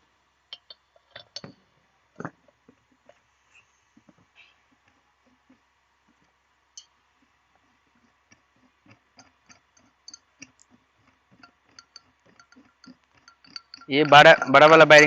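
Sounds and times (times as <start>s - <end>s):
metal tool clicks and clinks: 11.4s - 15.0s.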